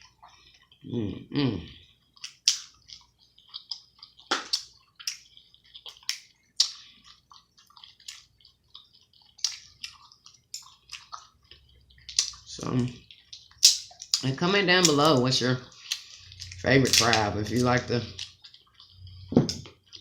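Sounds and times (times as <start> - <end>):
wet chewing: 0.0 - 20.0
lip smacks and slurps: 2.2 - 15.1.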